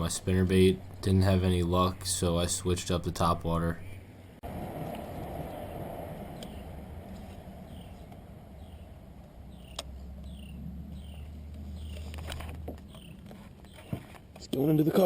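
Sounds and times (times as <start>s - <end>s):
low steady rumble: 0.0s - 13.7s
bird chirping: 6.3s - 6.8s, 7.6s - 14.5s.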